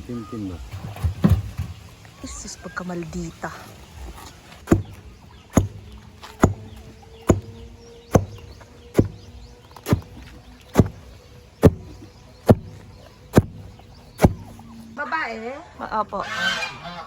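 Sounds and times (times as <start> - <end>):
blade chopping: 4.6 - 14.7.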